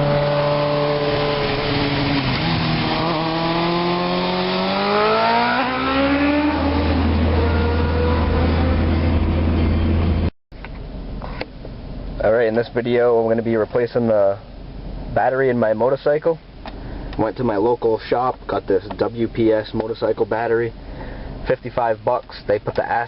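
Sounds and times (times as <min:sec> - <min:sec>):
motorcycle engine revving: 0:00.0 - 0:10.2.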